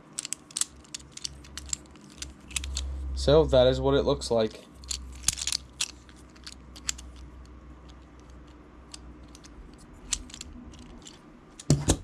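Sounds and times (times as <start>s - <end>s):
plastic fidget toy clicking: 0.2s - 2.9s, 4.8s - 7.2s, 7.8s - 11.8s.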